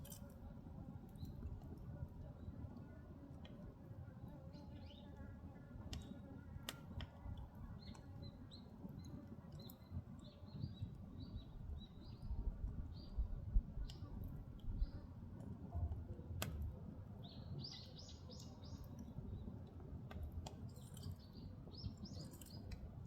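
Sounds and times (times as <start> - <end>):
small birds chirping: 7.6 - 15.1, 17.2 - 19.5, 20.7 - 22.8.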